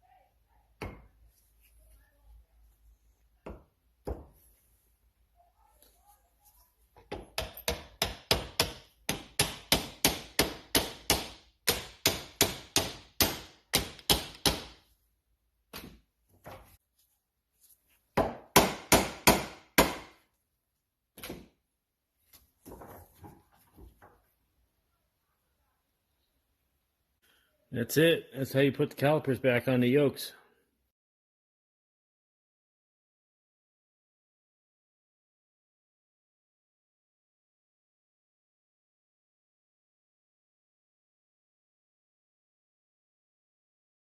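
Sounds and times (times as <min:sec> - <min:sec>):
hammer tapping: 0:07.0 - 0:14.8.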